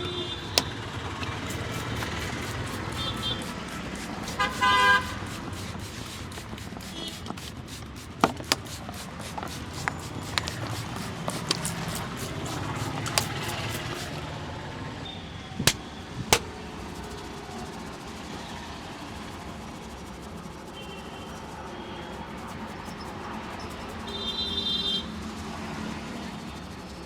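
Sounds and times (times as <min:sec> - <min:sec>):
street traffic noise: 0:00.0 - 0:27.0
hands slapping and tapping: 0:01.5 - 0:14.2
loud sharp smacks: 0:15.7 - 0:16.5.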